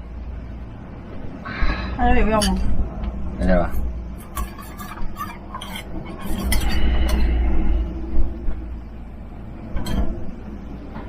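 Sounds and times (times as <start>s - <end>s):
utensils scraping a bowl: 3.7s - 7.8s
strong wind buffeting: 4.9s - 11.0s.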